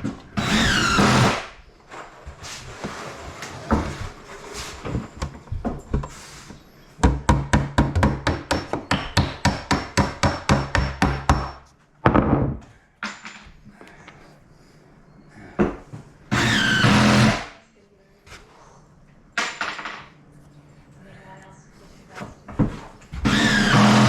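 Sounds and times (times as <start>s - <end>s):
hammer striking: 7.0s - 11.7s.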